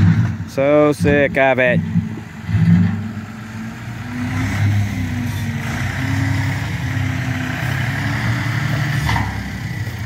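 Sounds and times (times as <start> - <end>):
tractor engine running: 0.0 - 10.0.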